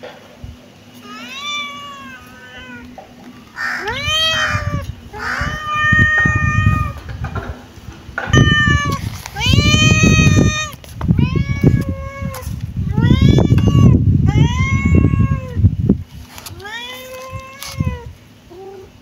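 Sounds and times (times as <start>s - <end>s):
kitten meowing: 1.0s - 2.9s, 3.6s - 7.0s, 8.4s - 15.6s, 16.5s - 18.9s.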